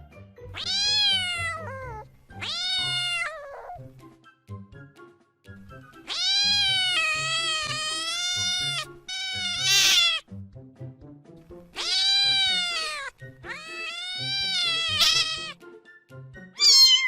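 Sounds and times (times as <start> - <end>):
background music: 0.0 - 17.0
cat meowing: 0.5 - 3.9, 6.1 - 10.3, 11.8 - 15.6, 16.6 - 17.0.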